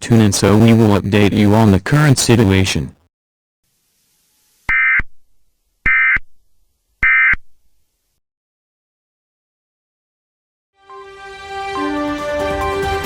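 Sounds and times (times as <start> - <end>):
short buzzy data tone bursts: 4.4 - 5.2, 5.8 - 6.3, 7.0 - 7.4.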